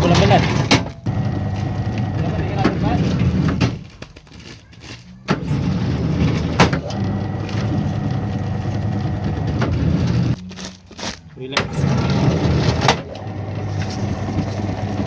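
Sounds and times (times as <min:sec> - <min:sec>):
press machine humming: 0:00.0 - 0:03.6, 0:05.4 - 0:10.4, 0:11.6 - 0:15.0.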